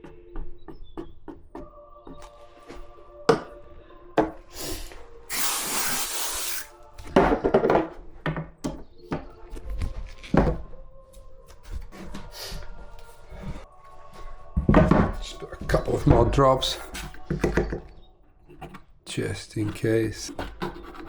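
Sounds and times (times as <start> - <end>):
background music: 0.0 - 21.0
loud hiss: 4.6 - 6.7.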